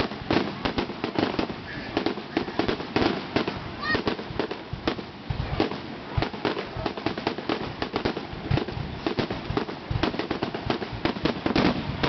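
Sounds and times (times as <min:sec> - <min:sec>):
deep firework booms: 0:00.0 - 0:12.0
fireworks bangs and crackles: 0:00.0 - 0:12.0.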